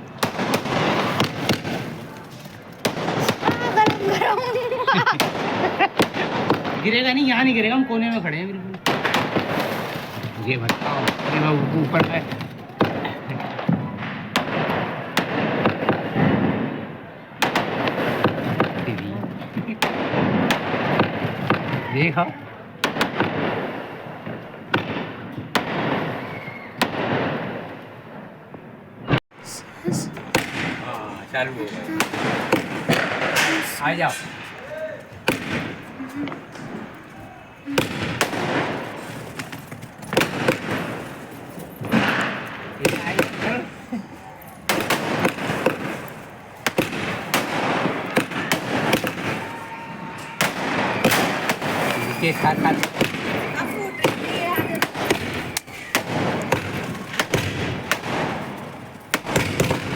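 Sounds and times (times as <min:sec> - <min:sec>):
fireworks bangs: 0:00.0 - 0:59.9.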